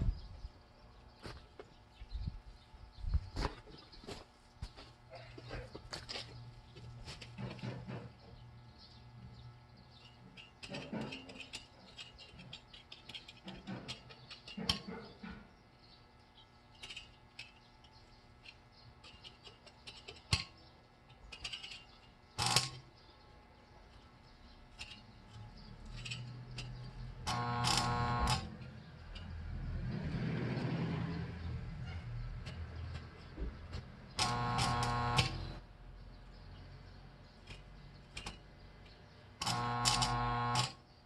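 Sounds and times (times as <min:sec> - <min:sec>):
short humming tone: 0:27.2 - 0:28.7, 0:34.2 - 0:35.7, 0:39.4 - 0:40.8.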